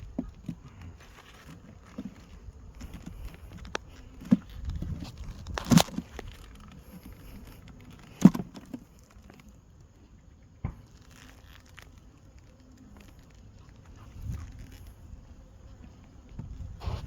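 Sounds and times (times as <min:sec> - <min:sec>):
rustling and tearing comb: 0:00.3 - 0:09.4, 0:10.8 - 0:15.0.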